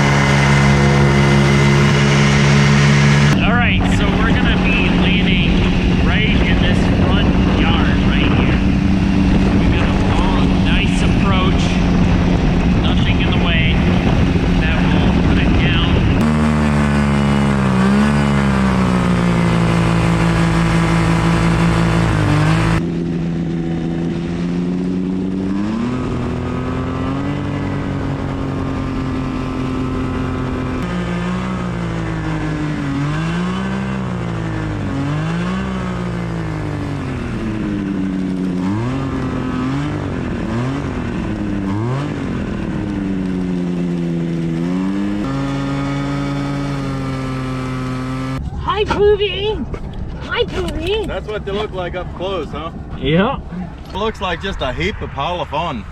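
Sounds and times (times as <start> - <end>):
ultralight engine and propeller: 0.0 - 55.9.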